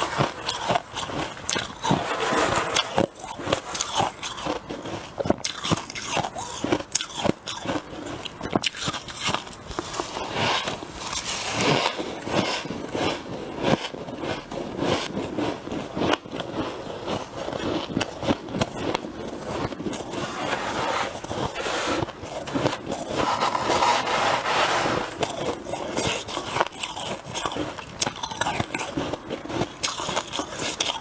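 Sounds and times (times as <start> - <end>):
frost being chewed: 3.9 - 20.2, 25.2 - 31.0.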